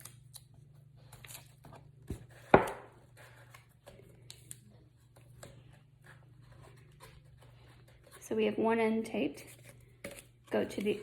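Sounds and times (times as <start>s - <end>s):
tape and paper rustling: 9.4s - 11.0s.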